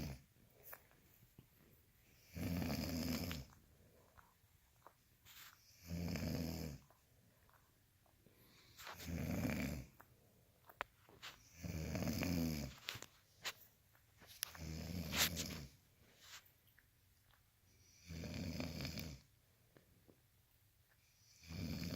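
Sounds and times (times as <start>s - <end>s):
person snoring: 2.2s - 3.5s, 5.8s - 6.8s, 9.0s - 9.9s, 11.6s - 12.7s, 18.0s - 19.2s, 21.4s - 21.9s.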